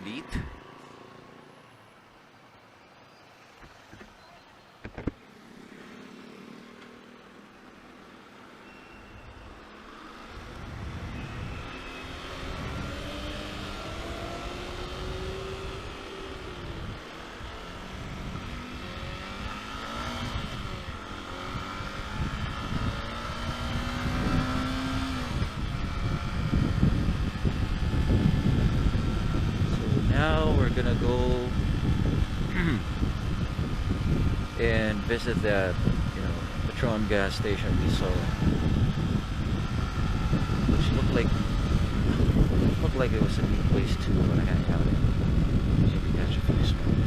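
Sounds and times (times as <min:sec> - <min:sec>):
motorcycle engine revving: 0:05.1 - 0:08.2, 0:09.5 - 0:47.0
wind buffeting microphone: 0:10.3 - 0:47.0.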